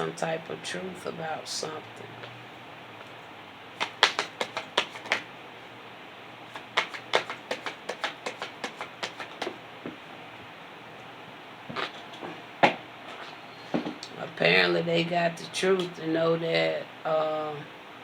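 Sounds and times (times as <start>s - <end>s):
cards being shuffled: 3.8s - 5.3s, 6.5s - 9.6s.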